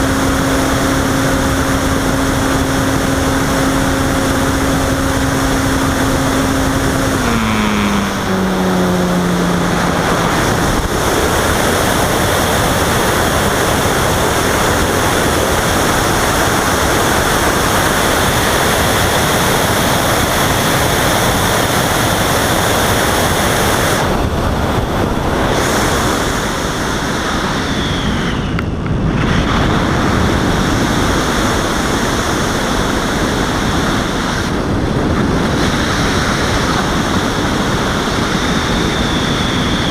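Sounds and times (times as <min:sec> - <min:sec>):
wind rushing: 0:00.0 - 0:17.8
electric motor whine: 0:00.0 - 0:26.4.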